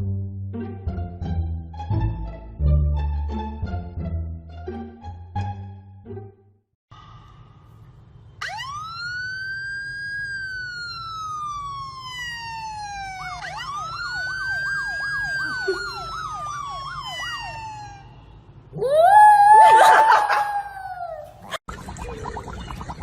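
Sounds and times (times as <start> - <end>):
siren wailing: 8.4 - 21.3
siren yelping: 8.4 - 21.6.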